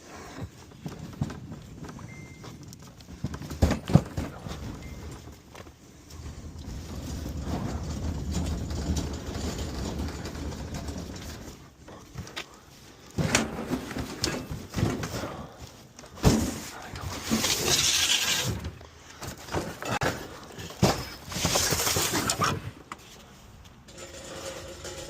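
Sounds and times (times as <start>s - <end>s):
debris knocks and thumps: 0.7s - 22.7s
debris scraping: 6.0s - 12.6s, 16.3s - 18.8s, 19.4s - 22.8s, 23.9s - 25.0s.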